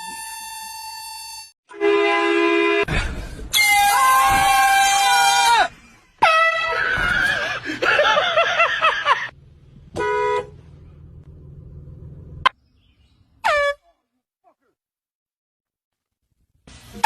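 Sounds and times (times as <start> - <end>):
air horn blasting: 0.0 - 2.9, 10.0 - 10.7.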